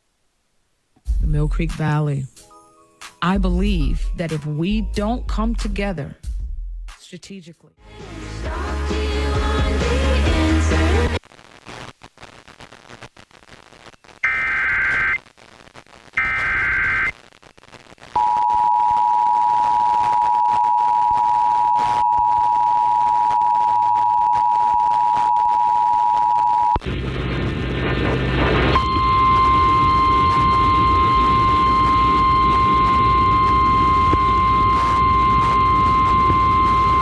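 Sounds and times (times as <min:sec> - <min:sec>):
static and hum: 0:00.0 - 0:02.3, 0:08.5 - 0:37.0
single-tone warning alarm: 0:28.6 - 0:37.0
two-tone attention signal: 0:28.8 - 0:37.0.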